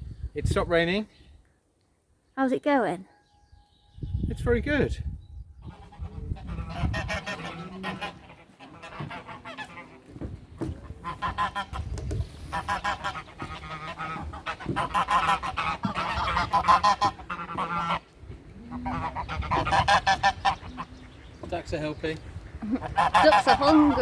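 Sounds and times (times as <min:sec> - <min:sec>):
geese honking: 0:05.6 - 0:24.0.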